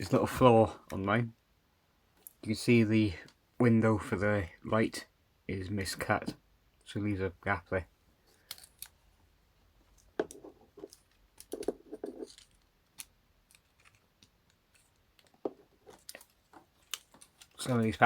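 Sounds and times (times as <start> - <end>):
plastic toy parts clicking: 8.4 - 9.0, 10.8 - 18.0.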